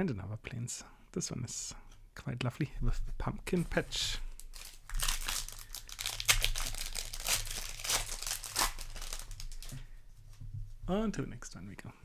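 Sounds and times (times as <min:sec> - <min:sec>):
foil wrapper crinkling: 0:04.2 - 0:09.8.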